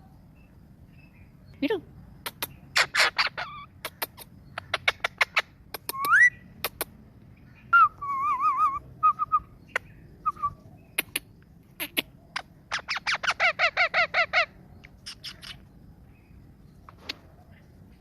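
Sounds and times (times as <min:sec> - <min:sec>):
parrot chirping and clicking: 0:02.2 - 0:06.9, 0:11.0 - 0:13.6, 0:14.8 - 0:15.6
parrot whistling: 0:07.8 - 0:09.5.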